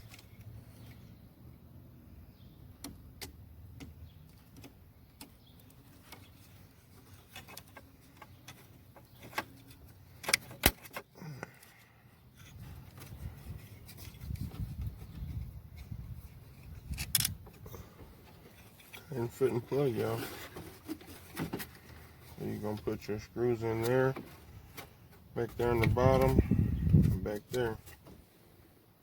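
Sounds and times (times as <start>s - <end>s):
plastic parts clicking and rattling: 2.8s - 15.4s, 16.5s - 17.6s.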